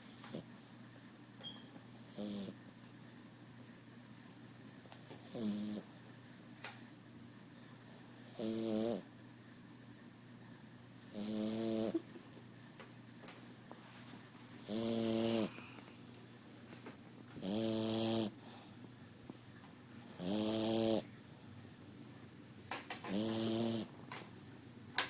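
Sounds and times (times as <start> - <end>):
pet snoring: 2.0 - 2.6, 5.1 - 5.9, 8.2 - 9.1, 11.1 - 12.0, 14.6 - 15.7, 17.4 - 18.6, 20.0 - 21.1, 23.0 - 23.9.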